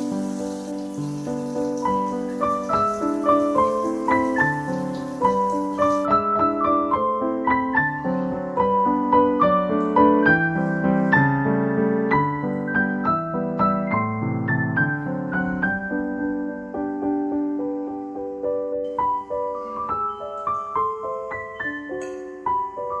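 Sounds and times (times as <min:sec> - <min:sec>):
faint hiss: 0:00.0 - 0:06.1
solo piano music: 0:00.0 - 0:23.0.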